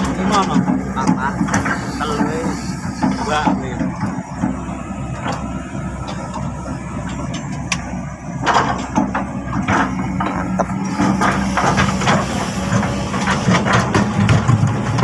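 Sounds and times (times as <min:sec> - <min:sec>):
diesel engine running: 0:00.0 - 0:15.0
clattering knocks: 0:07.0 - 0:15.0.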